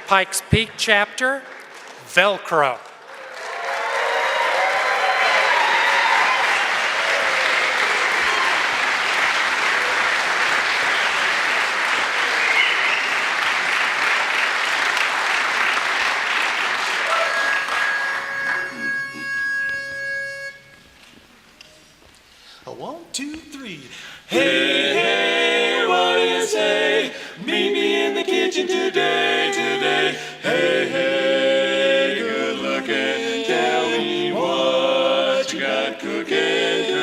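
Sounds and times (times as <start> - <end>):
audience applauding: 2.6 - 19.2.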